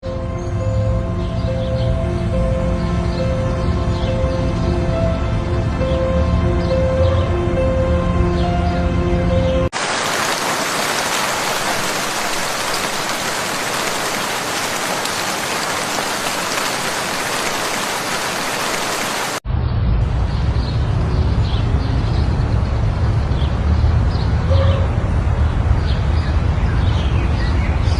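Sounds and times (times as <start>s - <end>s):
heavy rain hiss: 9.8s - 19.4s.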